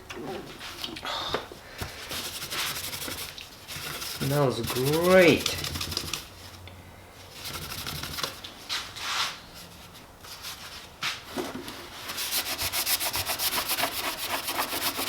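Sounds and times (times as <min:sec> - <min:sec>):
hand rubbing on plastic: 0:01.8 - 0:06.6.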